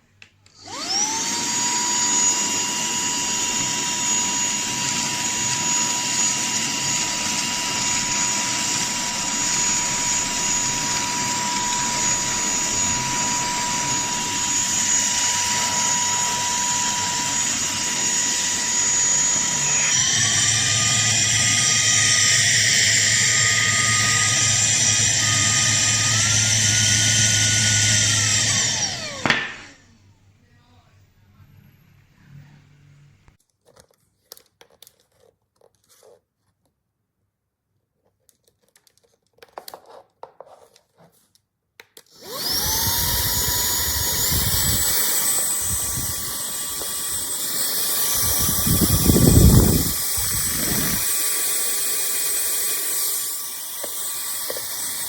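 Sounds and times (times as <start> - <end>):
handheld vacuum cleaner whine: 0.4 - 29.9, 42.0 - 55.0.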